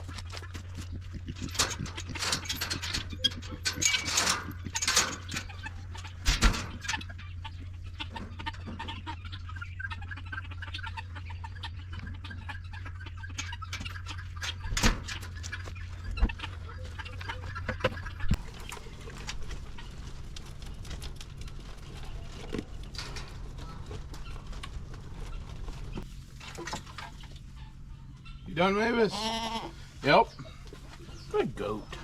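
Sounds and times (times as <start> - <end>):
chickens clucking: 0.0 - 32.0
steady low hum: 0.0 - 32.0
knocks and clatter: 0.1 - 9.1.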